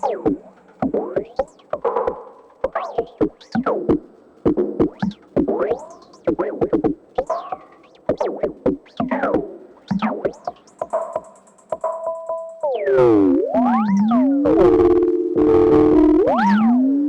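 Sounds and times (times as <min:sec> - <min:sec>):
synth tone gliding down and up: 0:12.8 - 0:17.0.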